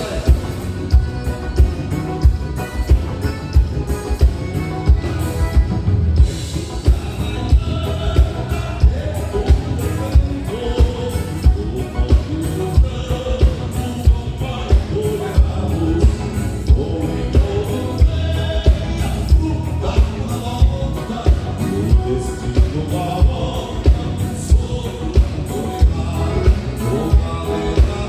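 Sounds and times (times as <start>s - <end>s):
bass drum beat: 0.0s - 28.0s
person singing: 6.5s - 28.0s.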